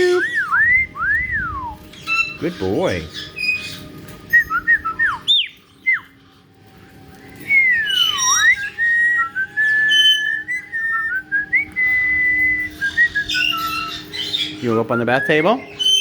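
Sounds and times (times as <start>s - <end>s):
parrot whistling: 0.0s - 6.2s, 7.4s - 16.0s
parrot chirps: 13.2s - 14.7s, 15.6s - 16.0s.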